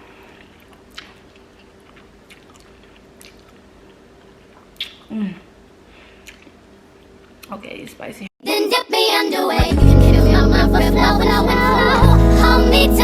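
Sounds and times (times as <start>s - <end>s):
food being chewed: 0.2s - 5.1s, 6.2s - 6.6s
wet mouth clicks: 0.4s - 5.1s, 6.2s - 6.6s.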